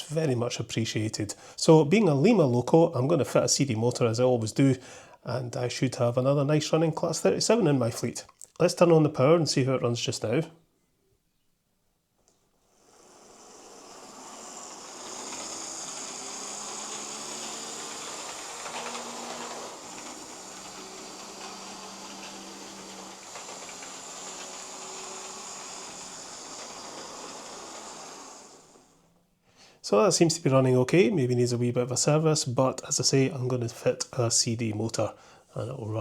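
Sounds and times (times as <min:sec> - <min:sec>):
model train motor whine: 0:12.6 - 0:29.2
model train wheels on track: 0:12.7 - 0:29.2.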